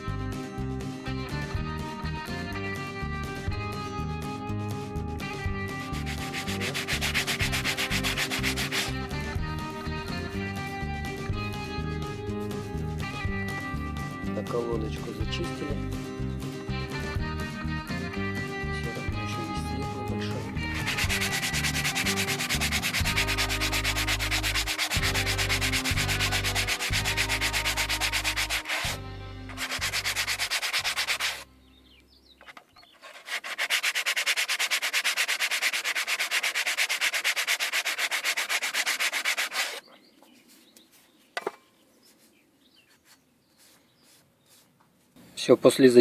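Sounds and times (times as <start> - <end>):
sandpaper rasping on brake pad: 5.8 - 10.4, 20.4 - 31.5, 32.9 - 41.1, 42.1 - 45.1.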